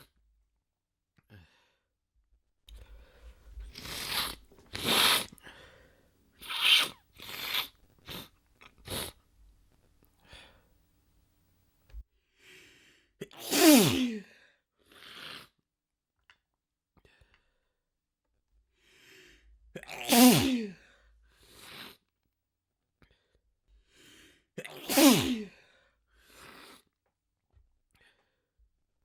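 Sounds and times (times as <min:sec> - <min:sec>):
catches of breath: 0:02.7 - 0:09.3, 0:10.2 - 0:10.8
person sneezing: 0:03.6 - 0:09.2, 0:13.2 - 0:14.3, 0:19.8 - 0:20.8, 0:24.6 - 0:25.6.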